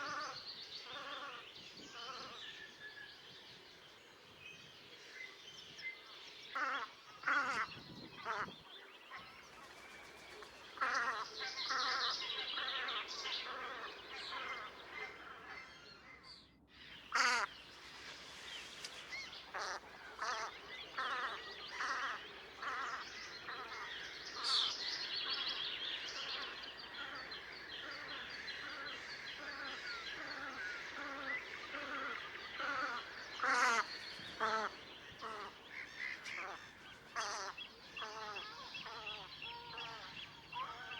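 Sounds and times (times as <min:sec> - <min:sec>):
ducks calling: 0:17.1 - 0:40.8.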